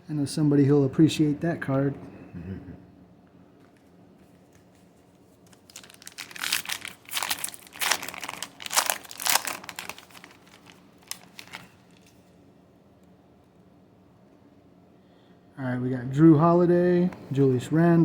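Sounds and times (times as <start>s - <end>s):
wrapper tearing and crumpling: 5.4s - 12.2s.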